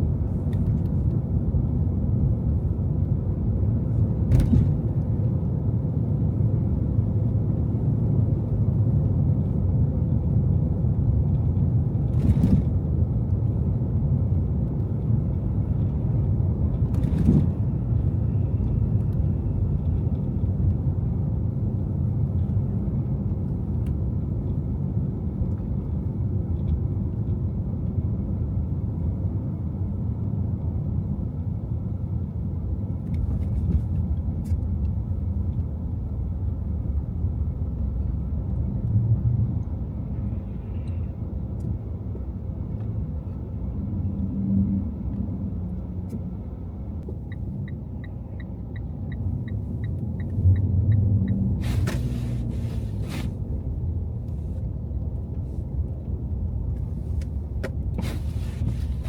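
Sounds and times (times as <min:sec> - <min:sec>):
car road and engine rumble: 0:00.0 - 0:59.0.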